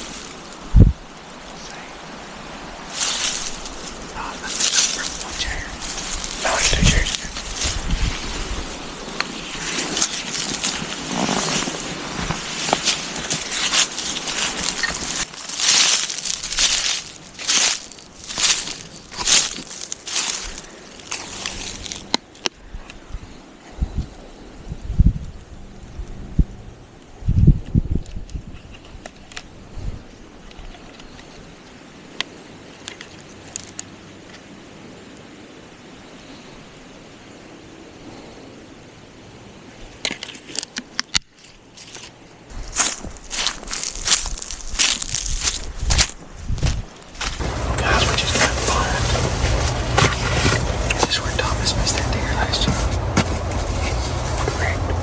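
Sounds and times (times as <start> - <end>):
footsteps crunching dry leaves: 0.0 - 0.6, 2.9 - 22.1, 42.5 - 55.0
steady outdoor hiss: 0.0 - 27.3, 28.5 - 55.0.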